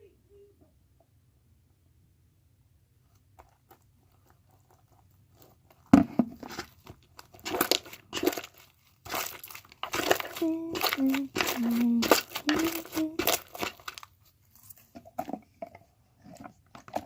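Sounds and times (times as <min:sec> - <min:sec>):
slime crackling and crunching: 0:04.3 - 0:14.8.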